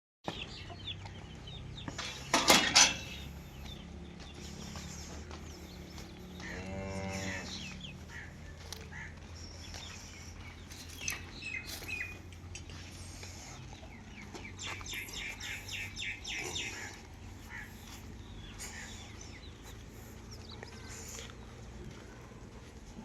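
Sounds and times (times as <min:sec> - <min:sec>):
cow mooing: 0:06.4 - 0:07.7.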